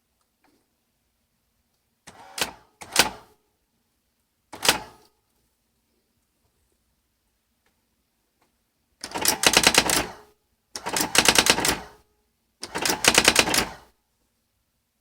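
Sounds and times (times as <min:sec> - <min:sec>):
electronic typewriter printing: 0:09.0 - 0:10.2, 0:10.8 - 0:12.0, 0:12.6 - 0:13.8.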